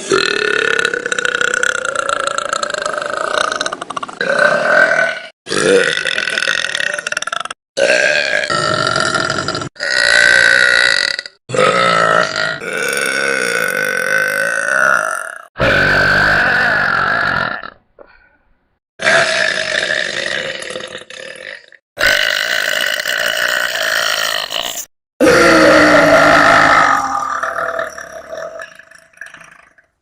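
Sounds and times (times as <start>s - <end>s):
girls burping: 15.6s - 18.1s.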